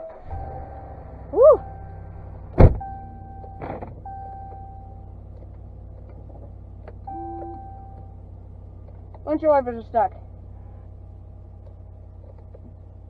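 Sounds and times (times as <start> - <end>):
pickup truck engine idling: 0.0 - 13.0
dashboard chime tones: 7.1 - 8.2.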